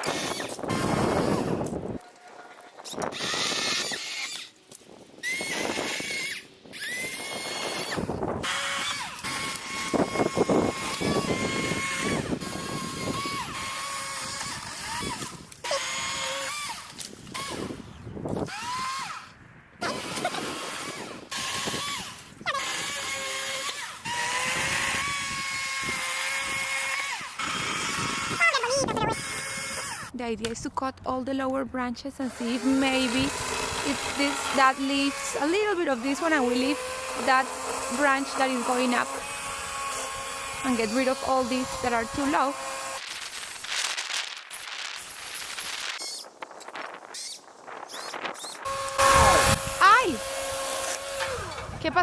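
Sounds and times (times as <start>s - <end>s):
chainsaw revving: 0.0s - 1.7s, 5.2s - 17.8s, 18.4s - 30.1s, 32.2s - 43.6s, 48.0s - 51.8s.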